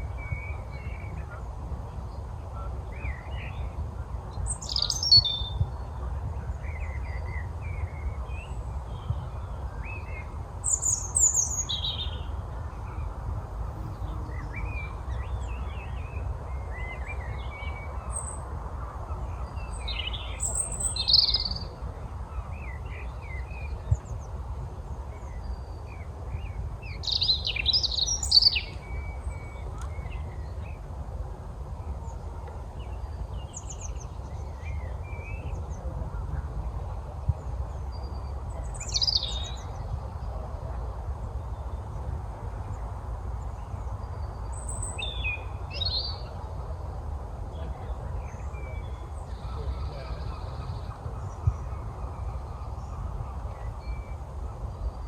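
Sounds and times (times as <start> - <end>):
songbirds chirping and singing: 0.0 - 31.0, 31.7 - 55.0
steady low rumble: 28.6 - 55.0.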